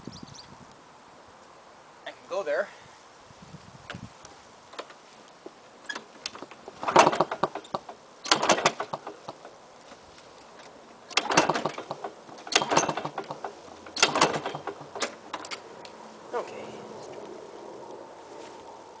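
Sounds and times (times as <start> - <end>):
mower recoil starter cranking: 5.9 - 9.5, 11.1 - 15.6.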